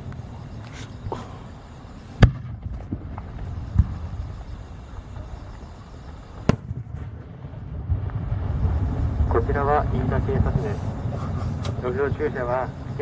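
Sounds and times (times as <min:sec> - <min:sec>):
low steady rumble: 0:07.8 - 0:13.0.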